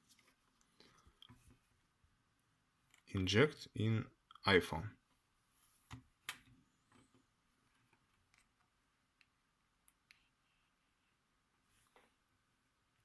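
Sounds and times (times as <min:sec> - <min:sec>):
faint handling noise: 0:00.0 - 0:02.0.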